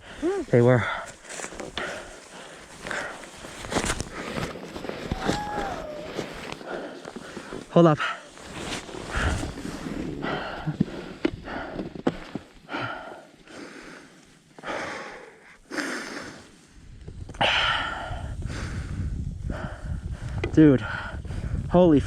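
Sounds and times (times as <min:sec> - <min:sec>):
heavy gasping breaths: 0:00.0 - 0:08.3, 0:09.1 - 0:16.6, 0:17.4 - 0:21.7
wind rumbling on microphone: 0:08.9 - 0:12.0, 0:16.7 - 0:22.0.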